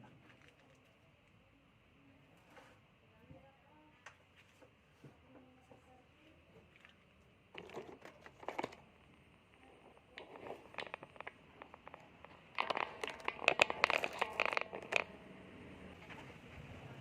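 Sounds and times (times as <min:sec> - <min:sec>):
crinkling handling noise: 0:06.6 - 0:15.2.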